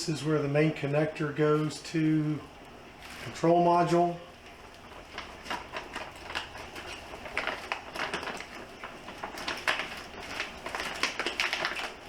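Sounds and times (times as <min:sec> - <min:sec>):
plastic packaging crinkling: 0:02.9 - 0:12.0.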